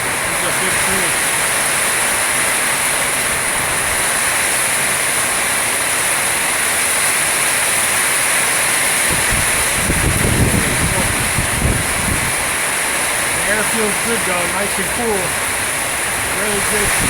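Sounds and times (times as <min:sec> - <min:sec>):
heavy rain pouring: 0:00.0 - 0:17.0
strong wind: 0:00.0 - 0:17.0.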